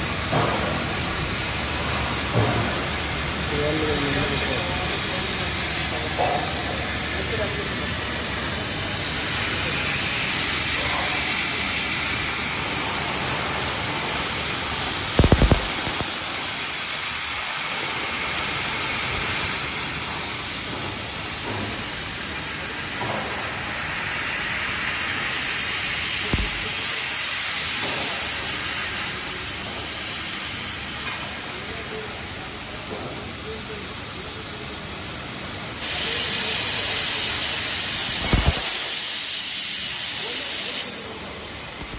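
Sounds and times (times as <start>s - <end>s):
laser cutter hissing: 0.0s - 41.9s
low thumps: 26.3s - 26.8s.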